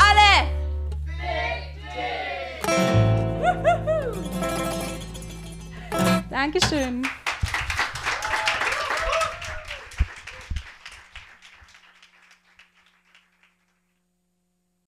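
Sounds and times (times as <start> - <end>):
voices calling out: 1.1 - 2.7
audience clapping: 7.0 - 13.9.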